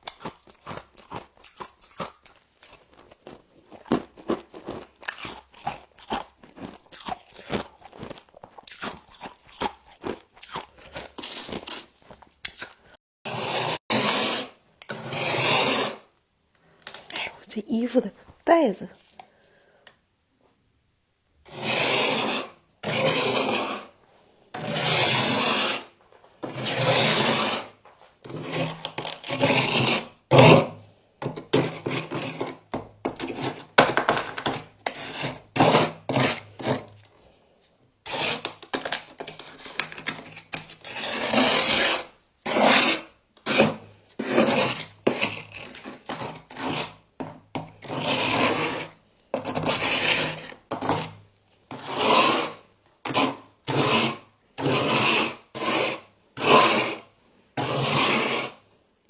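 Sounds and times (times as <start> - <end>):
frost being scraped: 10.8 - 16.1, 21.5 - 24.0, 24.6 - 25.9, 39.3 - 47.0, 57.6 - 58.6.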